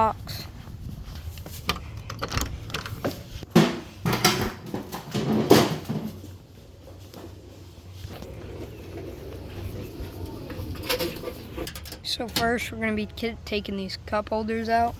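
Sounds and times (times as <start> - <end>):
toolbox knocks and clunks: 2.2 - 6.2.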